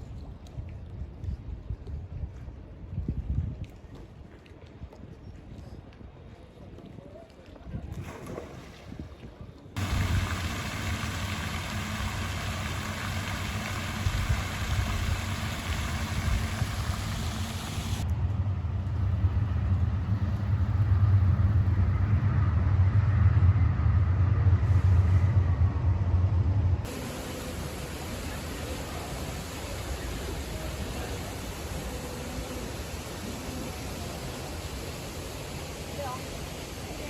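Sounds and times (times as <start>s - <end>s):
motor running: 9.8s - 18.0s.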